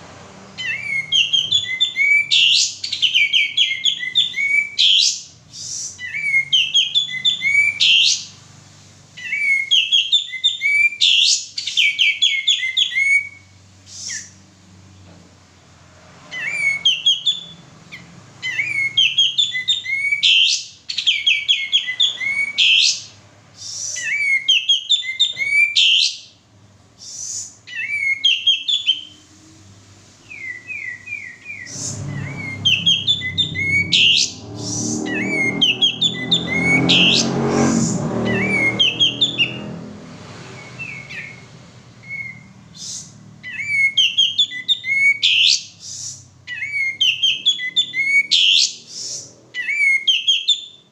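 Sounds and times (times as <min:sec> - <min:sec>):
bird singing high notes: 0:30.2 - 0:39.9
low rumble: 0:31.4 - 0:40.2.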